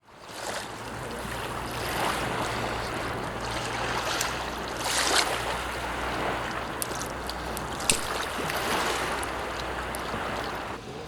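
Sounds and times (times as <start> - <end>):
waves breaking on beach: 0.0 - 11.0.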